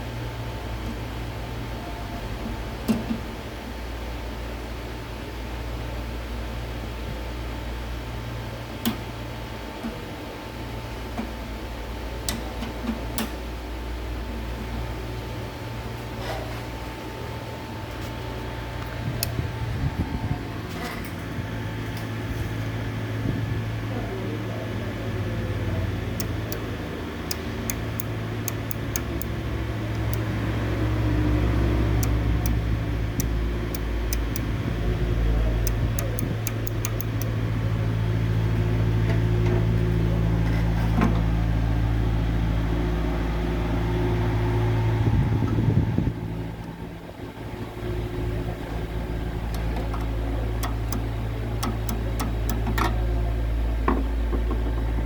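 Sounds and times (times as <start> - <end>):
microwave oven hum: 0.0 - 55.0
light clicks and ticks: 35.6 - 37.3.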